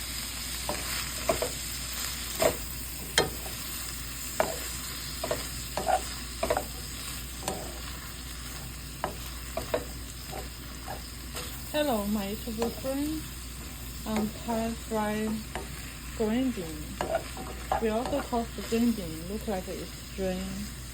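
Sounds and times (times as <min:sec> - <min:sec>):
beans sizzling in frying pan: 0:00.0 - 0:20.9
utensil clacking against pan: 0:04.4 - 0:06.8, 0:17.0 - 0:18.7.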